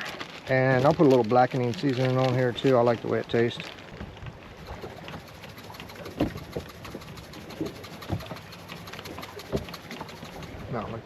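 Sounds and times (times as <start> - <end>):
steady outdoor hiss: 0.0 - 11.0.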